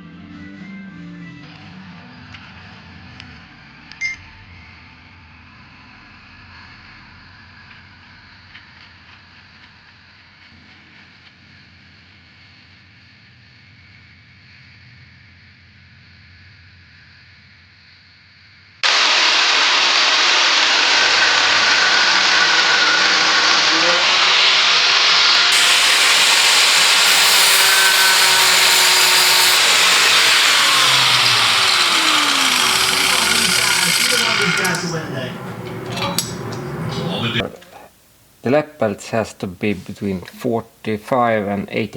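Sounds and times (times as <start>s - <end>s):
power tool working metal: 18.8s - 37.4s.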